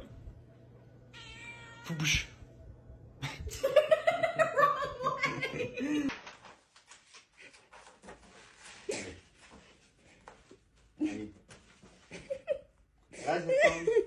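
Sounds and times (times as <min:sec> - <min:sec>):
cat meowing and yowling: 0:01.2 - 0:02.3.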